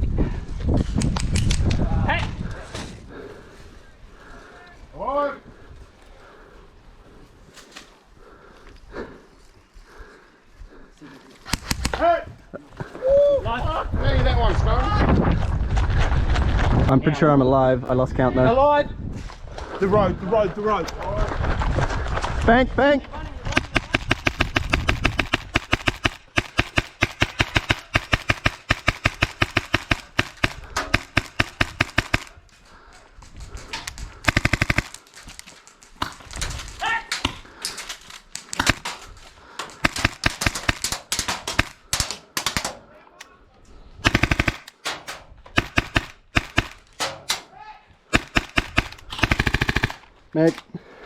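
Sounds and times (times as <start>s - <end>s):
airsoft gun full-auto bursts: 23.6s - 32.4s, 34.2s - 35.0s, 38.6s - 38.8s, 39.8s - 42.7s, 44.0s - 44.8s, 45.6s - 46.9s, 48.1s - 50.1s.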